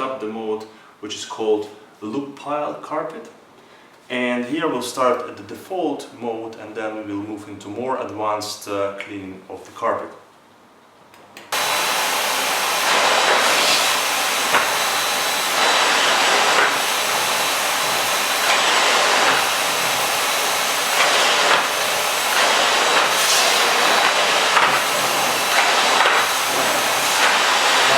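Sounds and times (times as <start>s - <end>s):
vacuum cleaner running over carpet: 11.6s - 27.9s.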